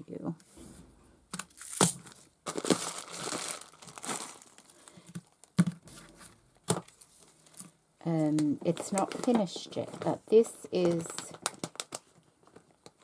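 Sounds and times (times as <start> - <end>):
paper rustling and crinkling: 1.3 - 7.8, 8.4 - 13.0.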